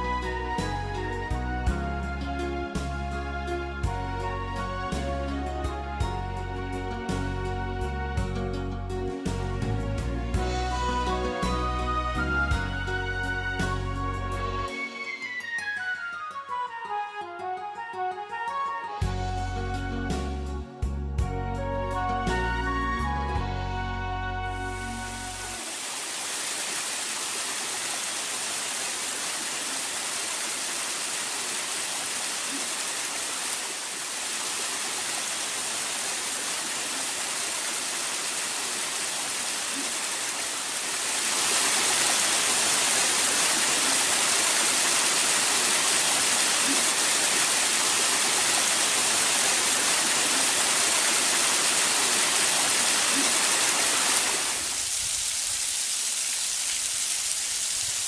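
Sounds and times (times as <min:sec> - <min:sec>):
waterfall rushing: 0:24.7 - 0:58.0.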